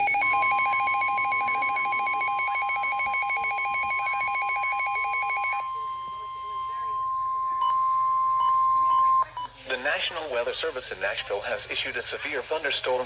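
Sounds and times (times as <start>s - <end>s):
high-pitched warning alarm tone: 0.0s - 9.5s.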